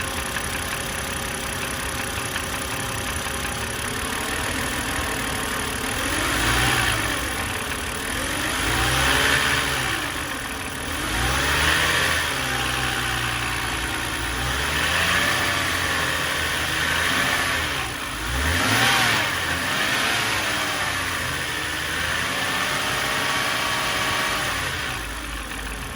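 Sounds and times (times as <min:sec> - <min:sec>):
engine knock: 0:00.0 - 0:19.2, 0:24.8 - 0:25.9
car engine idling and revving: 0:00.0 - 0:25.9.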